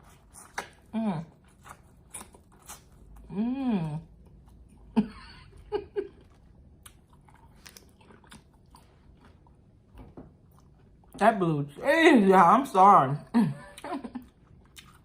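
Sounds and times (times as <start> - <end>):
wet chewing and mouth clicks: 0.0 - 3.3, 6.2 - 11.2, 14.2 - 15.0.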